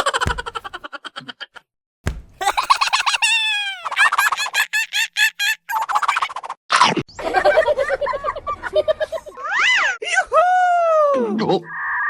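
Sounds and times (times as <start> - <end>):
thump: 0.2 - 0.8, 2.1 - 3.2.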